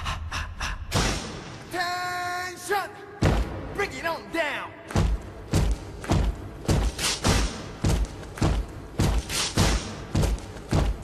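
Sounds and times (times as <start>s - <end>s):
snare hits: 4.9s - 10.9s
kick drum beating: 4.9s - 11.0s.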